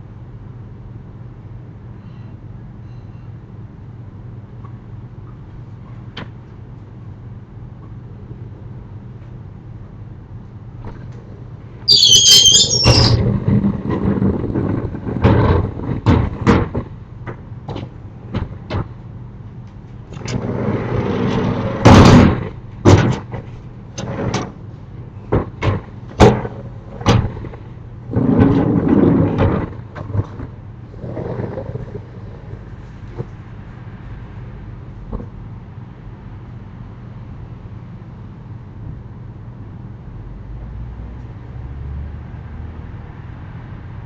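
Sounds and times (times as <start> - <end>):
sliding shutters rumbling on track: 10.8 - 35.6
high squeal: 11.9 - 13.3.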